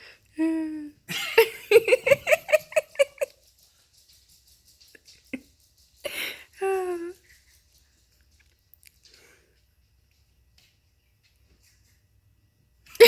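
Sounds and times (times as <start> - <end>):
person laughing: 1.1 - 3.4
breath: 6.0 - 6.6, 9.0 - 9.7.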